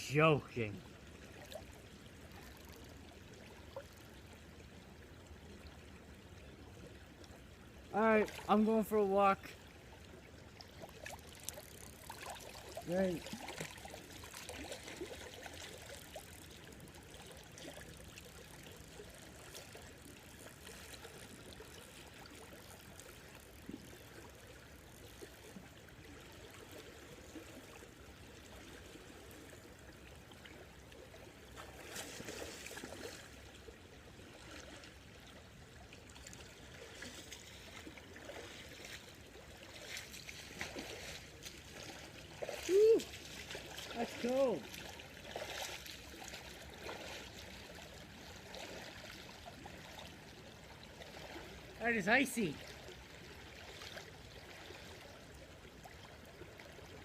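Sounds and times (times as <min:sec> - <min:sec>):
creek water running: 0:00.0 - 0:57.0.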